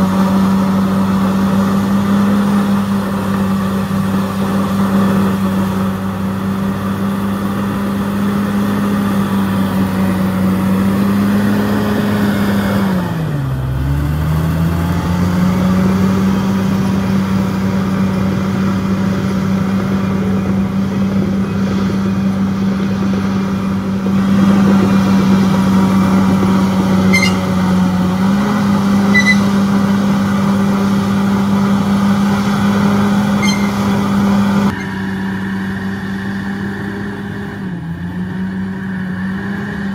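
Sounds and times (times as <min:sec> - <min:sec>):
bulldozer diesel engine under load: 0:00.0 - 0:39.9
faint short squeaks: 0:27.0 - 0:27.6, 0:29.0 - 0:29.6, 0:33.4 - 0:33.9, 0:34.7 - 0:35.0.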